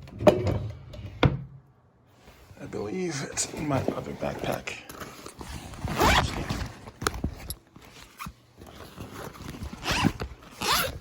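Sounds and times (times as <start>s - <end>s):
backpack zipper rasping: 5.4s - 6.7s, 9.1s - 11.0s.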